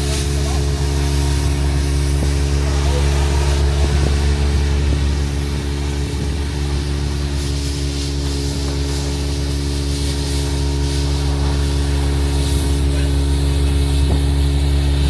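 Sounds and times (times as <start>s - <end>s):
steady hiss: 0.0s - 15.0s
vacuum excavator engine drone: 0.0s - 15.0s.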